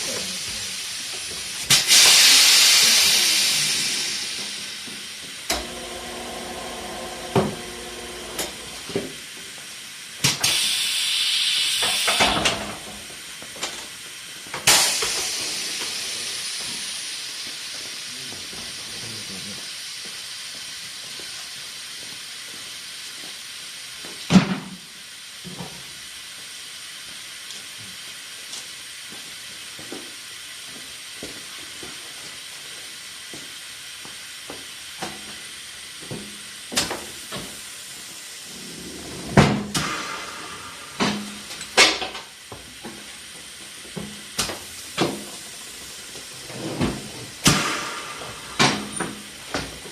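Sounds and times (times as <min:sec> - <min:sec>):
compressed air hissing: 0:00.0 - 0:09.0, 0:10.2 - 0:13.3, 0:14.1 - 0:20.4, 0:36.5 - 0:42.5, 0:44.6 - 0:49.9
loud rushes of air: 0:01.6 - 0:05.4, 0:38.4 - 0:41.7, 0:47.3 - 0:49.5.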